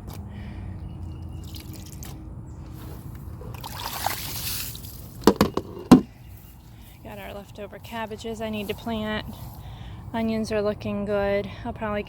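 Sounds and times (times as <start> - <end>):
sharp knocks: 5.2 - 6.1
soft handling rustle: 7.9 - 9.7.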